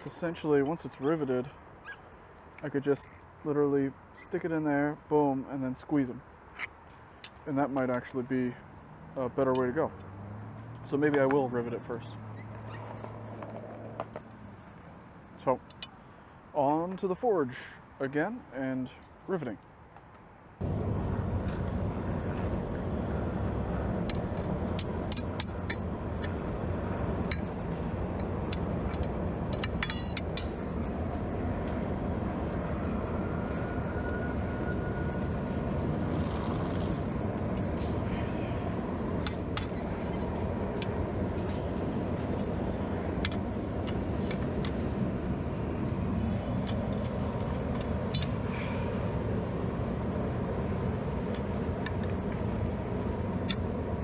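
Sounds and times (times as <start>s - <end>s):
metal clicks and clinks: 27.2s - 27.6s, 28.2s - 30.6s.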